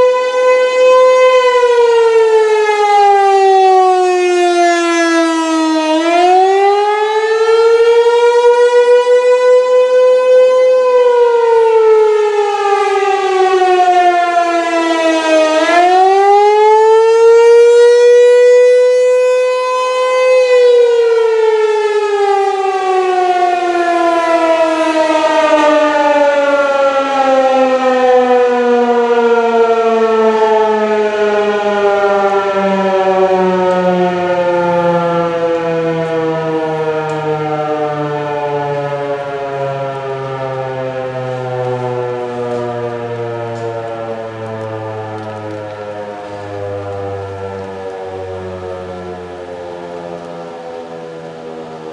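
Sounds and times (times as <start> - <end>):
fire siren rising and falling: 0.0 - 51.9.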